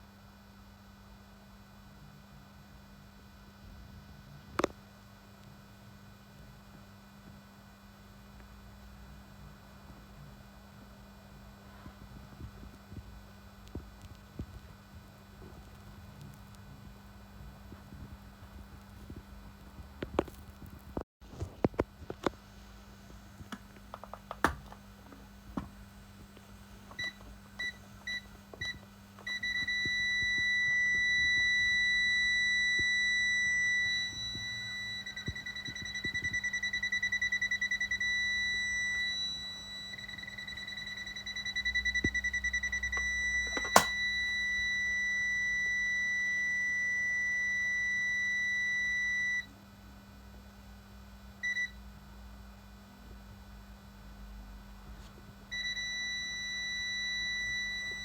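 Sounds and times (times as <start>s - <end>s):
continuous high-pitched alarm tone: 26.9s - 49.5s.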